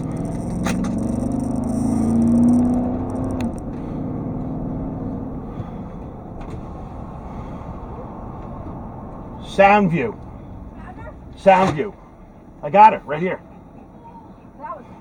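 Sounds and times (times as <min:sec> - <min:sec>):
car engine accelerating: 0:00.0 - 0:12.6.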